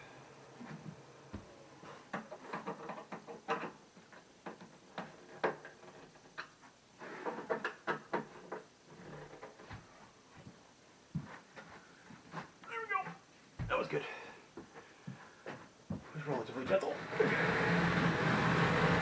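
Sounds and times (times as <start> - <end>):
cabinet parts knocking and clattering: 2.1 - 6.2, 7.3 - 8.7.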